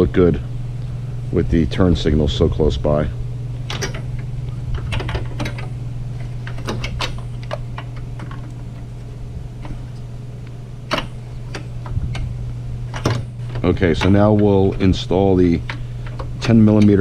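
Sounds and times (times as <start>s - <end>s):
steady low hum: 0.0s - 17.0s
hands clicking and tapping parts: 3.7s - 5.7s, 6.4s - 8.6s, 10.9s - 12.3s, 12.9s - 14.9s.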